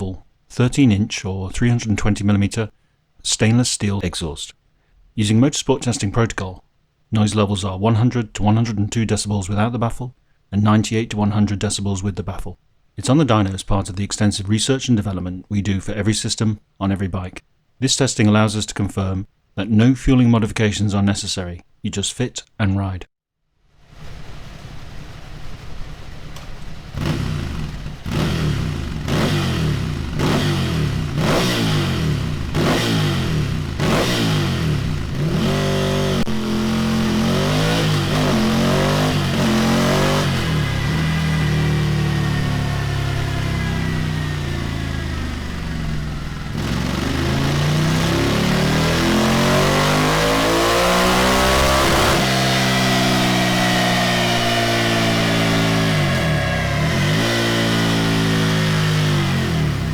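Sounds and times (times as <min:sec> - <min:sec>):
motorcycle engine revving: 0:24.1 - 0:59.9
motorcycle throttle blips: 0:26.3 - 0:59.9.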